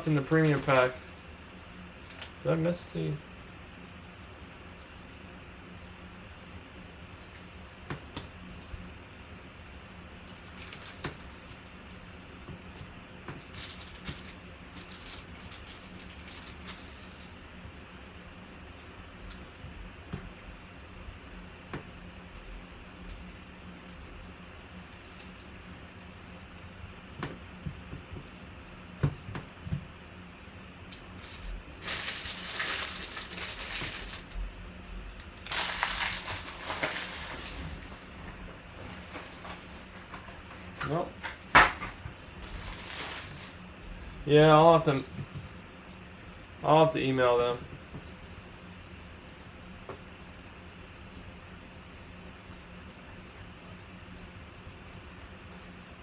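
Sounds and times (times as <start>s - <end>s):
cards and packaging handled: 0.0s - 1.2s, 31.1s - 34.4s, 35.1s - 41.0s, 41.6s - 43.6s
steady low hum: 0.0s - 56.0s.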